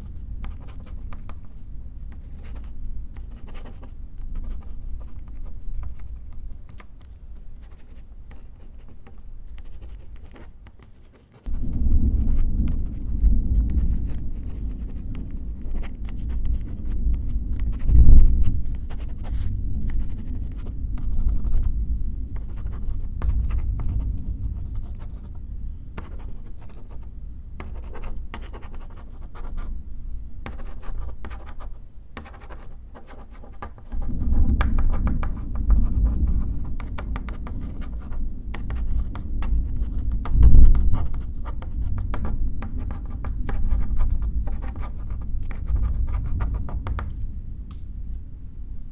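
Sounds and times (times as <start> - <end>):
pen scratching on paper: 0.0 - 21.7, 22.3 - 25.4, 26.0 - 29.7, 30.4 - 47.2
distant thunder rumbling: 11.5 - 28.3, 34.0 - 44.4.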